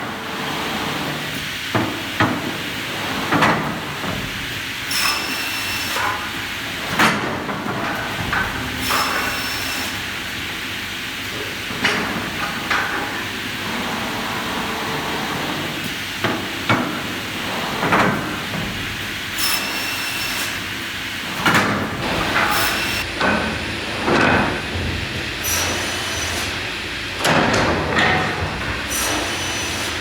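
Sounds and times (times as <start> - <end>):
crosscut saw machine noise: 7.8 - 14.3, 19.3 - 21.1, 21.9 - 30.0.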